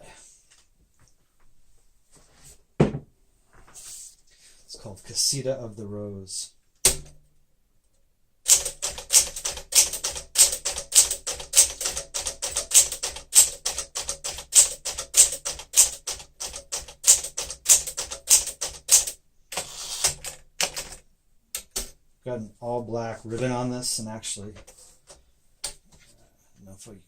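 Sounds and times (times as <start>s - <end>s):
manual typewriter typing: 8.5s - 21.0s.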